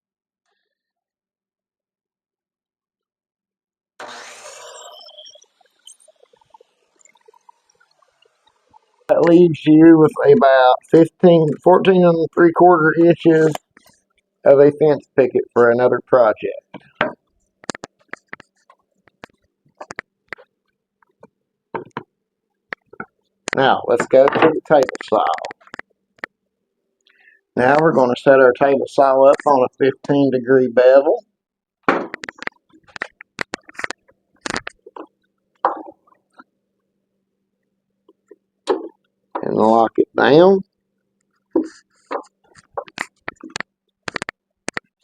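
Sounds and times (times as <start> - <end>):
wooden pieces clicking and knocking: 41.6 - 44.9.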